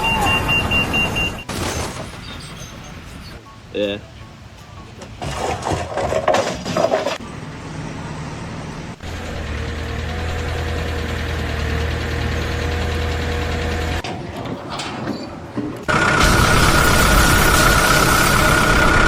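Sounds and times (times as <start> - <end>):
engine running with whine: 7.2 - 14.0, 15.9 - 19.0.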